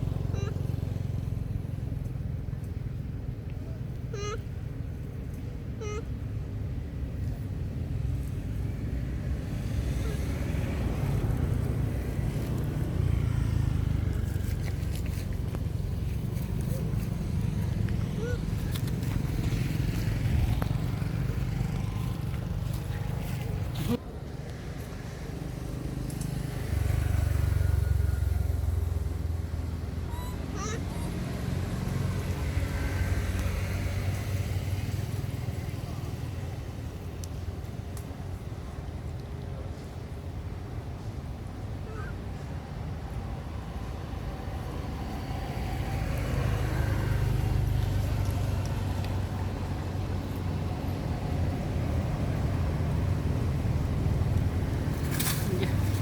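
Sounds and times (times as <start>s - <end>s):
vehicle engine rumbling: 0.0s - 56.0s.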